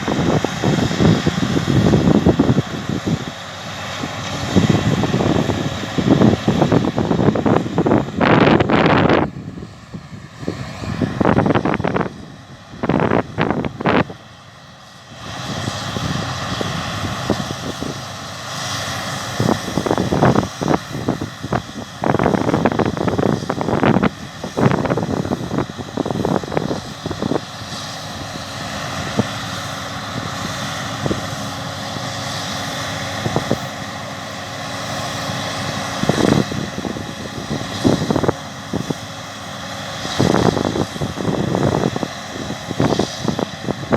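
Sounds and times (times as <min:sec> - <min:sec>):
wind buffeting microphone: 0:00.0 - 0:14.3, 0:15.1 - 0:43.9
combine harvester drone: 0:00.0 - 0:43.9.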